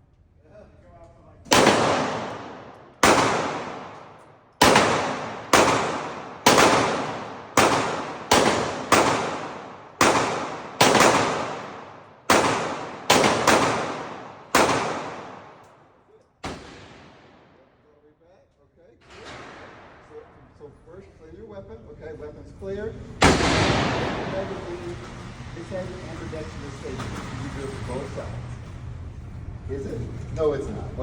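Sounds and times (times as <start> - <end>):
handgun shots echoing: 1.5 - 15.8, 16.4 - 17.6, 23.2 - 24.6.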